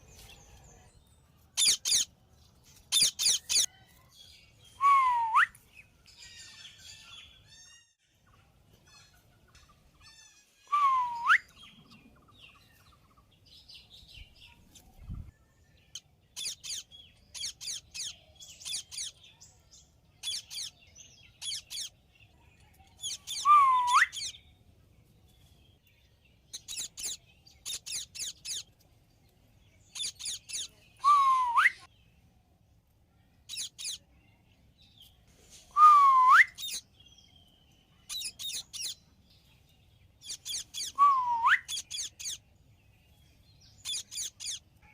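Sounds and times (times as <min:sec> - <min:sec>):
high-pitched bird chirps: 0:01.6 - 0:02.1, 0:02.9 - 0:03.7, 0:15.9 - 0:19.2, 0:20.2 - 0:22.0, 0:23.0 - 0:24.5, 0:26.5 - 0:28.7, 0:29.9 - 0:31.9, 0:33.5 - 0:34.0, 0:36.3 - 0:36.9, 0:38.0 - 0:39.0, 0:40.2 - 0:42.4, 0:43.6 - 0:44.7
bird swooping whistled call: 0:23.3 - 0:24.3.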